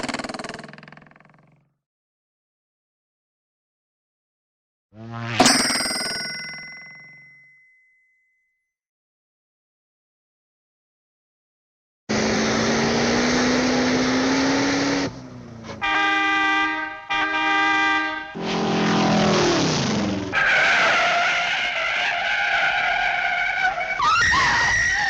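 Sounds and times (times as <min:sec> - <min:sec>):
cartoon engine note rising: 0:05.0 - 0:06.1
tire screech: 0:12.1 - 0:25.0
horn honks: 0:15.7 - 0:18.6.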